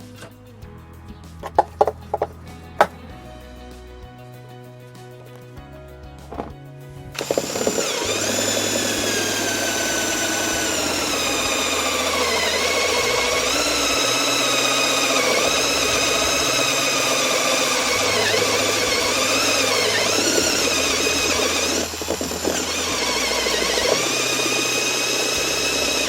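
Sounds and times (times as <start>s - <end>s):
cordless drill motor whine: 7.1s - 26.0s
drill bit cutting plastic: 7.1s - 26.0s.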